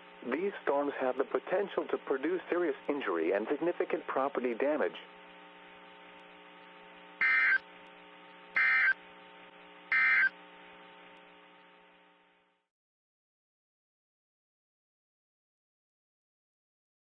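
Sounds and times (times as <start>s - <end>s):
faint steady hum: 0.0s - 12.7s
digital data tone bursts: 7.2s - 7.6s, 8.6s - 9.0s, 9.9s - 10.3s.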